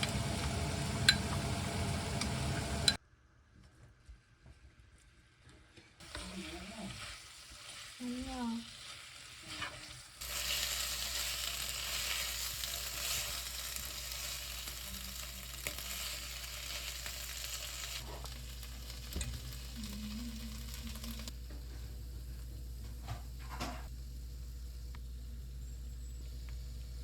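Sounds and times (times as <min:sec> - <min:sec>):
food sizzling in a frying pan: 0:00.0 - 0:03.0, 0:06.0 - 0:22.1.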